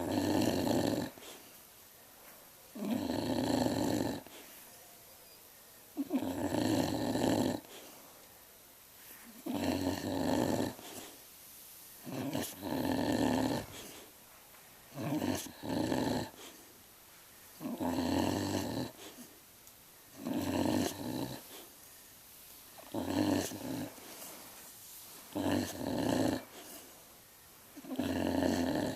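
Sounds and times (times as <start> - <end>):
animal snoring and grunting: 0.0 - 1.4, 2.8 - 4.4, 6.0 - 7.8, 9.4 - 11.2, 12.0 - 14.1, 14.9 - 16.6, 17.6 - 19.3, 20.2 - 21.7, 22.8 - 24.4, 25.3 - 26.9, 27.8 - 28.9.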